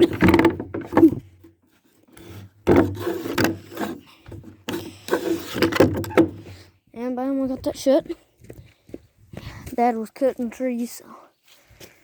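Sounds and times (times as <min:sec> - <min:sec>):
wooden door scraping shut: 0:00.0 - 0:01.2, 0:02.6 - 0:04.0, 0:05.1 - 0:06.4.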